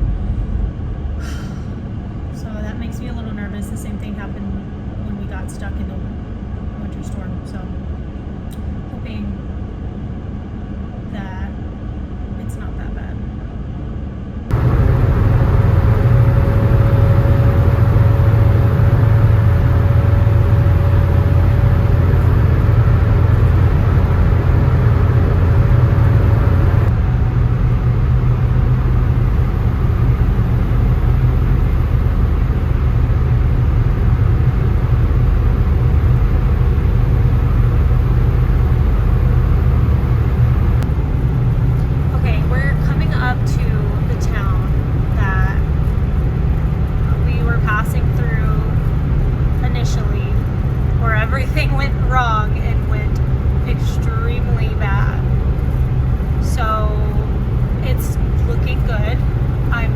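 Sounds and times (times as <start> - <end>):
van engine and road rumble: 0.0 - 5.9, 14.5 - 59.9
faint rising whine: 13.6 - 59.9.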